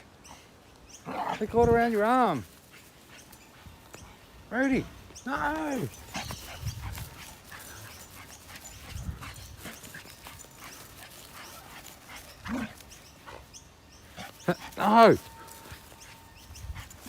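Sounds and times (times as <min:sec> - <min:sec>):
dog scuffling: 0:05.5 - 0:13.4.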